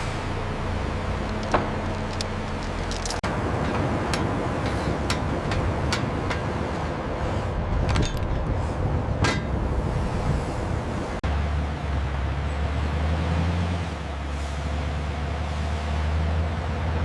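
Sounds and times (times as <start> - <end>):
sawmill machinery rumbling: 0.0 - 17.0
sharp knocks and clanks: 1.3 - 6.9, 9.2 - 9.6.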